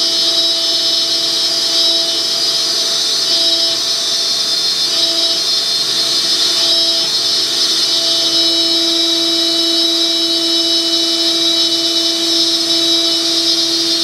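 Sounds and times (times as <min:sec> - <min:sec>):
high-pitched motor whine: 0:00.0 - 0:14.0
low two-tone hum: 0:04.9 - 0:14.0.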